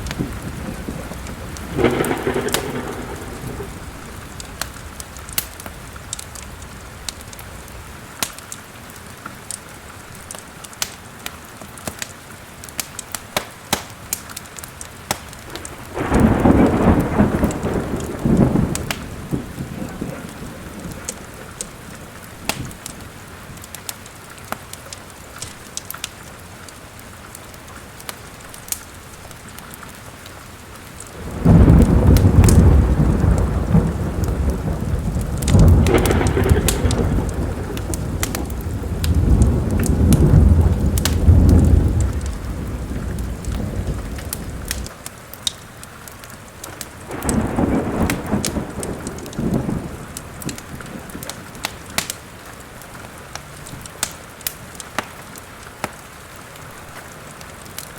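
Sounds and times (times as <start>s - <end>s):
thunder rolling: 0.0s - 7.8s, 15.1s - 23.1s, 31.2s - 44.9s, 47.0s - 52.1s
fireplace fire crackling: 0.0s - 57.9s
steady rain: 0.0s - 57.9s.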